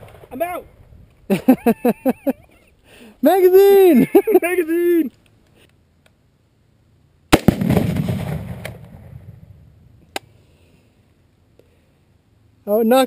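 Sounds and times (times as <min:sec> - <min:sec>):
exploding target boom: 0:07.3 - 0:09.8
rifle shot crack: 0:07.3 - 0:10.2.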